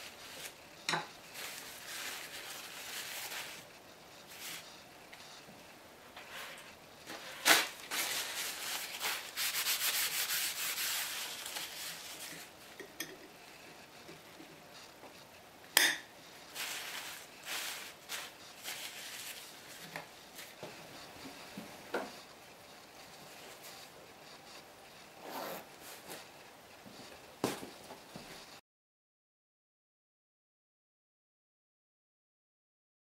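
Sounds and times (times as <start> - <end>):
rubbing and scraping on wood: 6.2 - 12.6.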